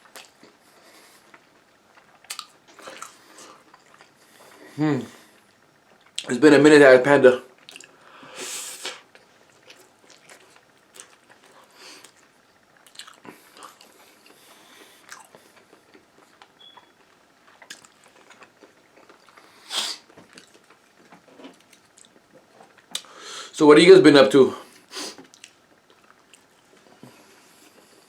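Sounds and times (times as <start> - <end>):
chewing with wet smacks: 0.0 - 4.6, 5.9 - 6.3, 7.6 - 8.0, 9.1 - 23.1, 25.2 - 26.8.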